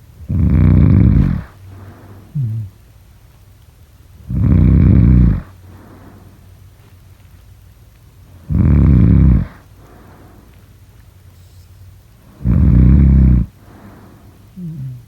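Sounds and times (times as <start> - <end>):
person snoring: 0.3 - 2.8, 4.3 - 5.5, 8.5 - 9.6, 12.4 - 15.0
breathing out: 1.2 - 2.8, 5.7 - 6.5, 9.8 - 10.6, 13.5 - 15.0.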